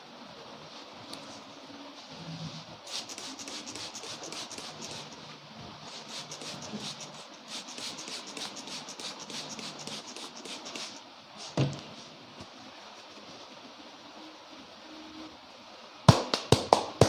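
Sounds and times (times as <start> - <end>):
hands scratching hair and scalp: 2.9 - 5.2, 5.9 - 11.6.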